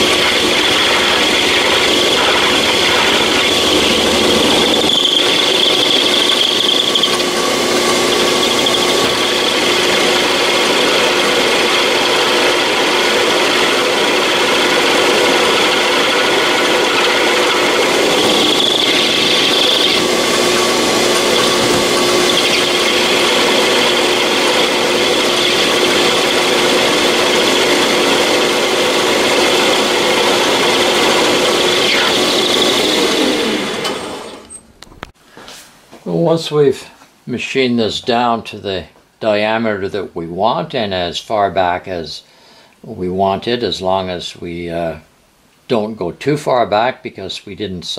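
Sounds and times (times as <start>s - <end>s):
high-pitched cutting tone: 0.0s - 13.1s, 13.9s - 34.3s
metal lathe running: 0.0s - 34.6s.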